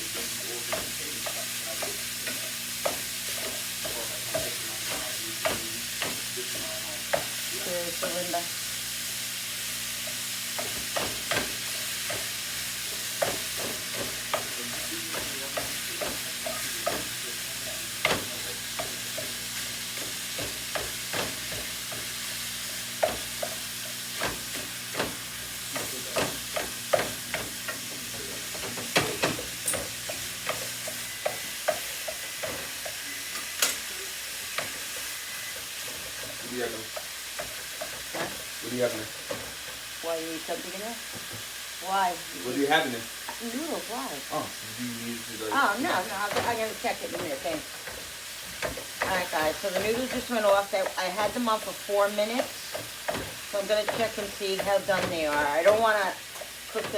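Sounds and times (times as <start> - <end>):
meat sizzling in a pan: 0.0 - 56.9
utensil scraping a pan: 45.4 - 56.9.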